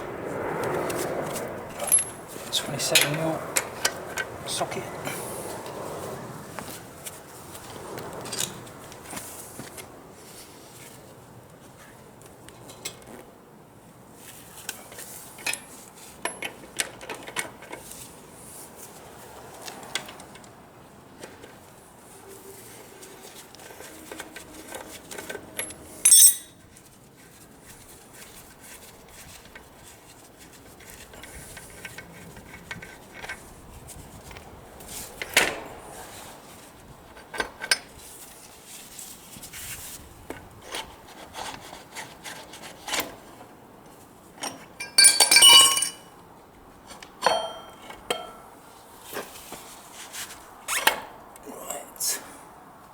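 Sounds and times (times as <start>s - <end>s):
tools clinking on metal: 1.8s - 2.2s, 25.6s - 26.7s, 44.4s - 46.1s, 47.2s - 48.5s
ringing metal clank: 25.6s - 26.6s, 44.5s - 46.1s, 47.2s - 48.5s.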